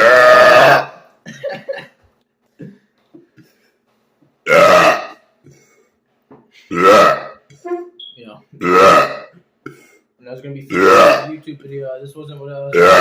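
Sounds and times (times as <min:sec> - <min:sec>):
person burping loudly: 0:00.0 - 0:01.1, 0:04.4 - 0:05.3, 0:06.7 - 0:07.5, 0:08.6 - 0:10.0, 0:10.7 - 0:11.4, 0:12.7 - 0:13.0.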